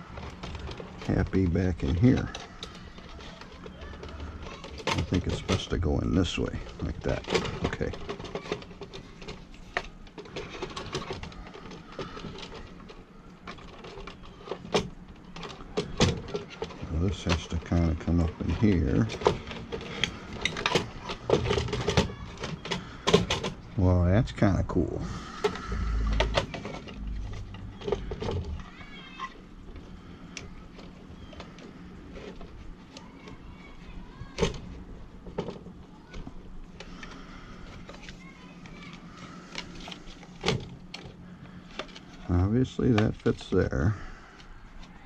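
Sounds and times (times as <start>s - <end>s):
plastic vacuum parts clicking: 0.0s - 23.6s, 34.3s - 43.8s.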